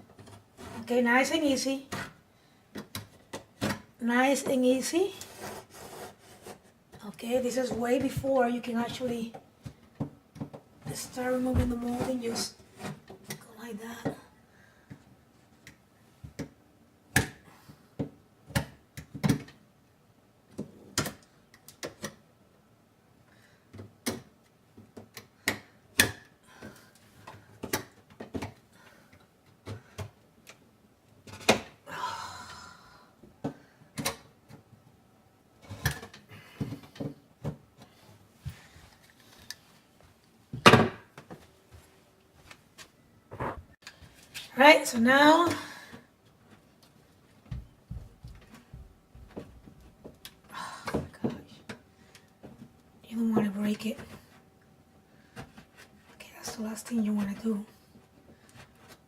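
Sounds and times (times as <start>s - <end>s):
knife scraping wood: 5.2s - 6.7s.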